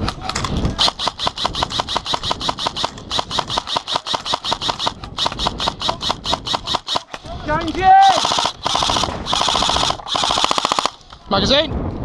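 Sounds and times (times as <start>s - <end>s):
airsoft rifle firing full auto: 0.8s - 7.2s, 8.0s - 11.0s.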